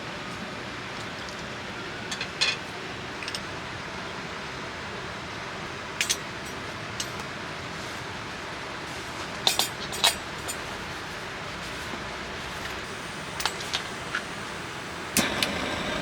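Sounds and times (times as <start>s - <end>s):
rain hiss: 12.2s - 16.0s.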